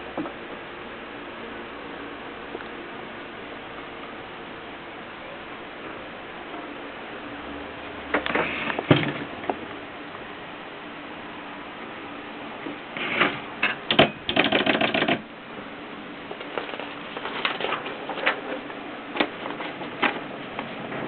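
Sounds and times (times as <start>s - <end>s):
typewriter clacking: 13.6s - 15.3s.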